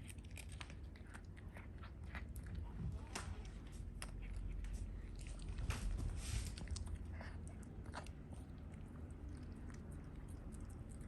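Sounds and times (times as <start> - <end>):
dog crunching a hard treat: 0.0 - 2.7.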